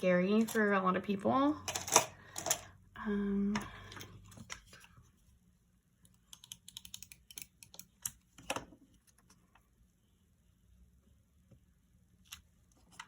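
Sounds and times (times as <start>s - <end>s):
small objects clicking on a desk: 6.2s - 9.3s.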